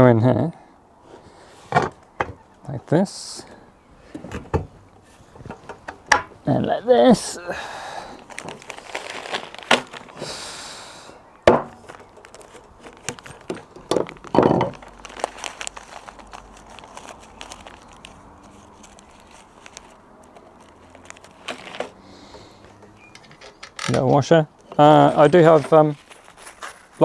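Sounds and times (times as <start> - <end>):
bolts and wooden slats clicking: 5.5 - 6.4, 22.6 - 25.8.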